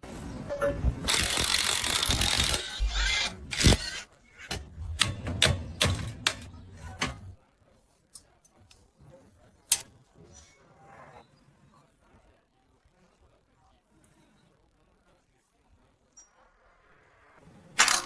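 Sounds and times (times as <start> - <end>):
mechanical grinding noise: 1.0 - 4.1
irregular clicks and knocks: 4.5 - 7.4.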